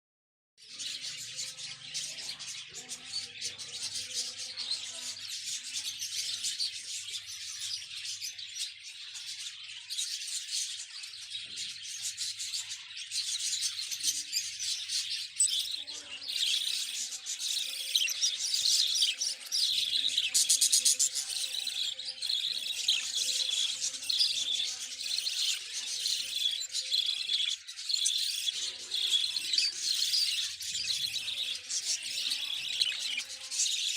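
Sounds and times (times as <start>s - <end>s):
budgerigars chattering: 9.2s - 33.9s.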